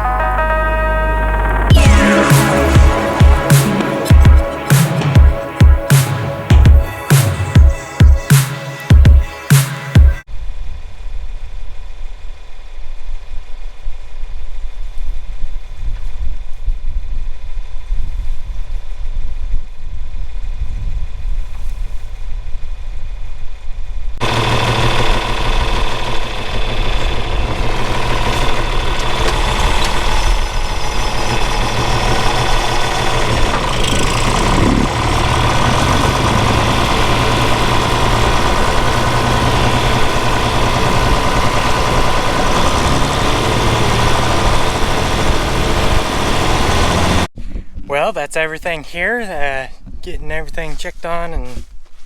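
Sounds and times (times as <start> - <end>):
vehicle engine running: 0.0 - 8.3, 24.2 - 47.4.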